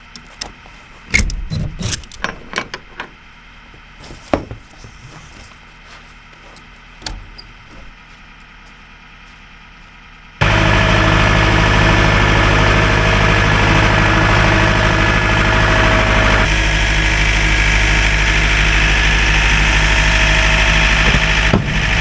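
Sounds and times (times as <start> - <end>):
sharp clicks and knocks: 0.0 - 5.2
loud knock: 21.5 - 22.0.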